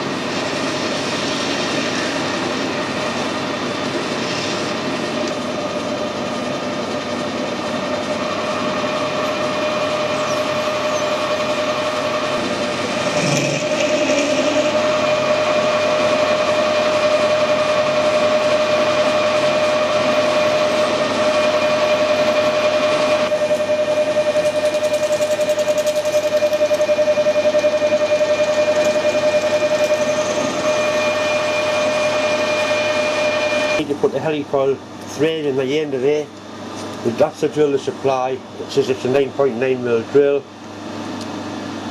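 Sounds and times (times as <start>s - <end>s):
metal lathe whine: 0.0s - 41.9s
blade cutting metal bar: 12.9s - 15.9s.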